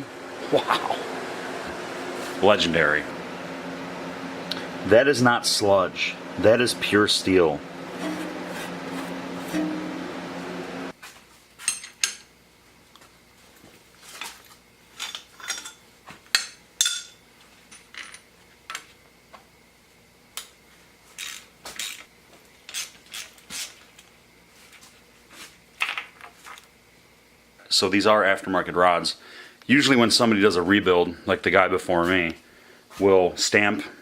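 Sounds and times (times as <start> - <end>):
hand tools clinking on metal: 15.0 - 15.8.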